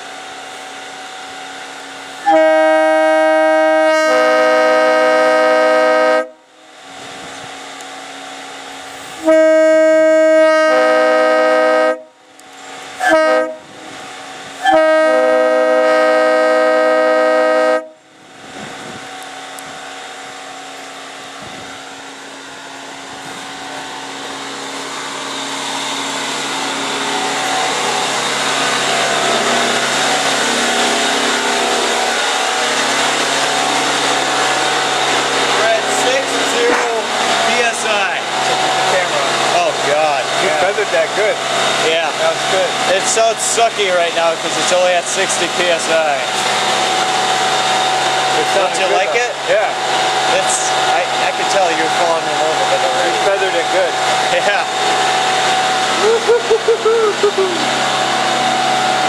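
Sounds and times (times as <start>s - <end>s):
locomotive air horn blasts: 2.2s - 6.5s, 9.1s - 12.2s, 13.0s - 13.8s, 14.6s - 18.0s
steady noise: 18.2s - 59.0s.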